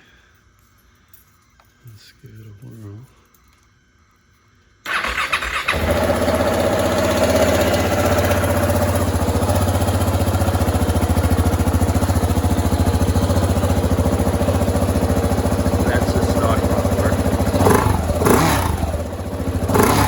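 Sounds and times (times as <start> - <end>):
electric starter cranking: 4.8 - 20.0
motorcycle engine idling: 4.9 - 20.0.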